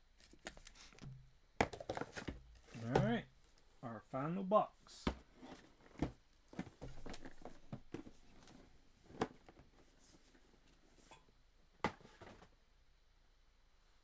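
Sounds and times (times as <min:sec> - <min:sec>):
cardboard box knocks and rustles: 0:01.0 - 0:03.2, 0:05.1 - 0:09.8, 0:11.8 - 0:12.5.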